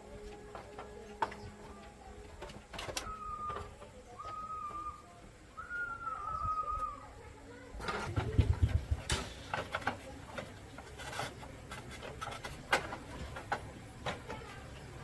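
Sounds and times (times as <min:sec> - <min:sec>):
light clicks and knocks: 0:07.8 - 0:15.0.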